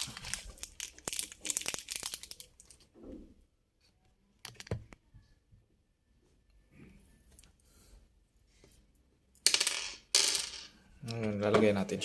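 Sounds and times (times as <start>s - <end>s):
plastic packet crinkling: 0.0s - 2.8s.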